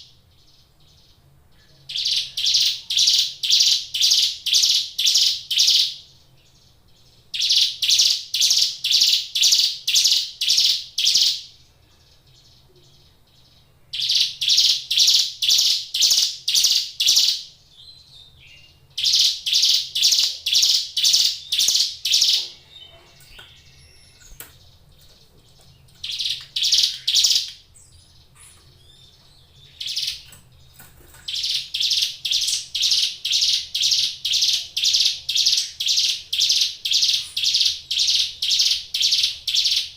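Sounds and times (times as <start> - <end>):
bird singing sharp chirps: 13.9 - 24.5, 26.0 - 30.4.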